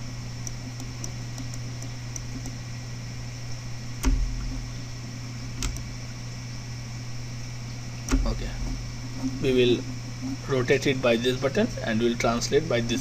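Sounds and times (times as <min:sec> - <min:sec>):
low hum and room hiss: 0:00.0 - 0:13.0
sharp clicks with low thump: 0:04.0 - 0:04.7, 0:05.6 - 0:05.9, 0:08.1 - 0:08.9.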